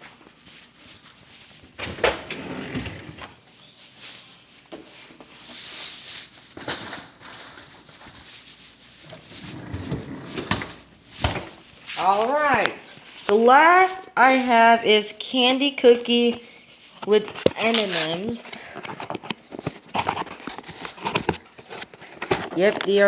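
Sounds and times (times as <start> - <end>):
packages rustling in a freezer: 0.0 - 12.4, 17.1 - 23.0.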